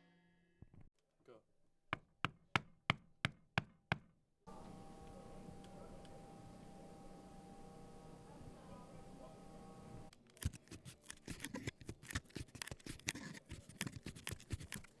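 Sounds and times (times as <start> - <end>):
faint steady hum: 4.5 - 10.1
sharp clicks and snips: 10.2 - 15.0.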